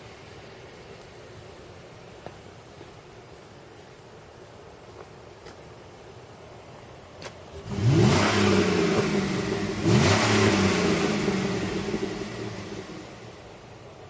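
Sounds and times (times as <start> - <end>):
car engine revving: 7.5 - 13.4.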